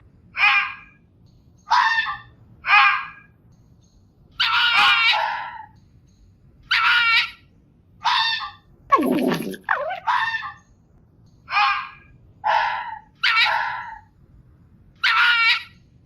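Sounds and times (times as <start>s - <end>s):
fox barking calls: 1.7s - 3.3s, 4.4s - 5.8s, 11.5s - 14.1s, 15.0s - 15.8s.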